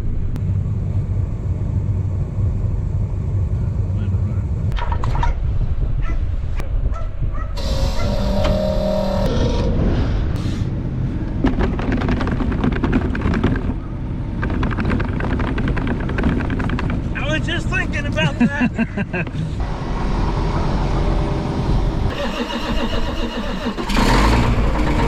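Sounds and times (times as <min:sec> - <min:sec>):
vehicle engine rumble: 0:00.0 - 0:25.0
fast clicks and rattles: 0:11.4 - 0:17.3.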